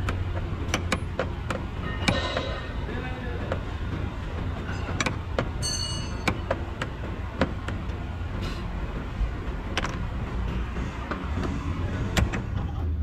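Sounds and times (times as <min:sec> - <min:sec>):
steady low rumble: 0:00.0 - 0:13.0
high ringing tone: 0:05.6 - 0:06.4.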